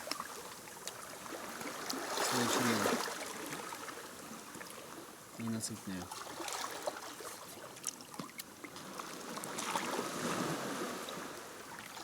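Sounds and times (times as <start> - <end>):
sea waves washing on shore: 0.0 - 12.0.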